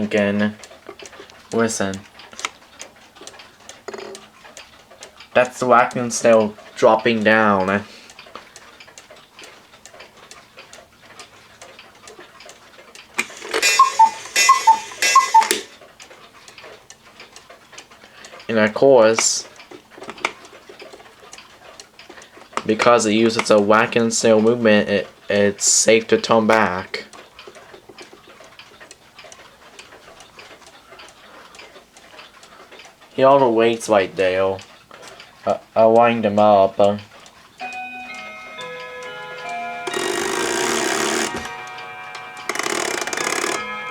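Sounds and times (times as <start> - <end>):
clock ticking: 0.0 - 43.9
clock strike click: 13.2 - 15.8, 37.6 - 43.9
two-note cuckoo call: 13.2 - 15.8, 37.6 - 43.9.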